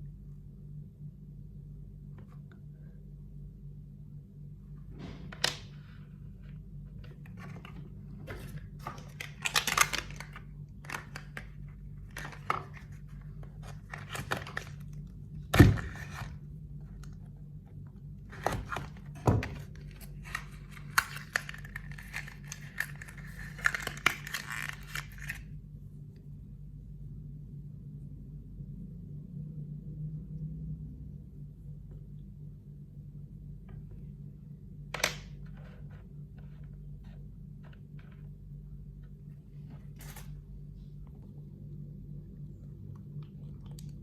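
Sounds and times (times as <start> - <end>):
steady low hum: 0.0 - 44.0
packaging tearing and rustling: 7.3 - 16.4, 18.3 - 25.4.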